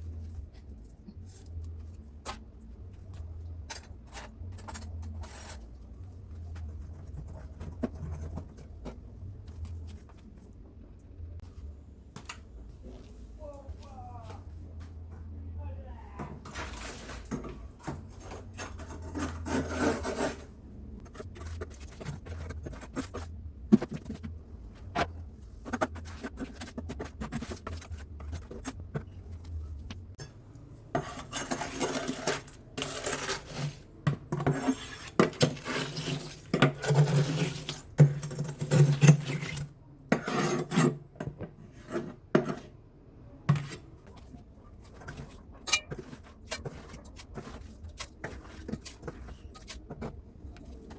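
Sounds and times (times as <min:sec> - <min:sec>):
hands scraping inside fridge: 0:16.5 - 0:24.4, 0:31.0 - 0:41.0, 0:43.5 - 0:50.9.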